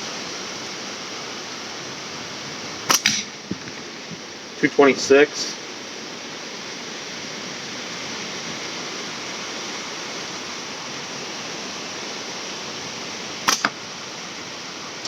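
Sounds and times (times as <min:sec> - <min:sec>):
steady hiss: 0:00.0 - 0:15.0
slingshot snap: 0:02.9 - 0:03.3, 0:13.5 - 0:13.8.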